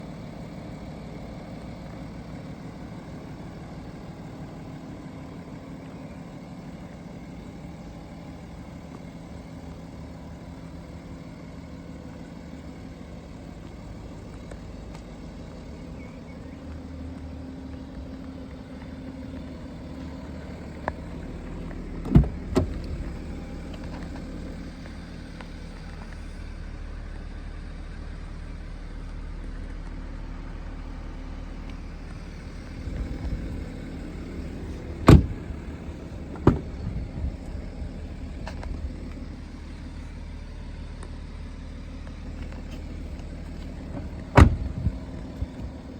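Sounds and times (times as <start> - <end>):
diesel engine idling: 0.0 - 45.9
sharp thumps: 34.8 - 37.6, 43.9 - 45.1.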